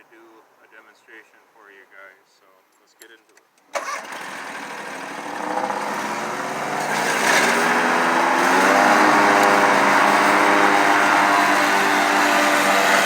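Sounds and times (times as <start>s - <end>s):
riding mower engine revving: 3.8s - 13.0s.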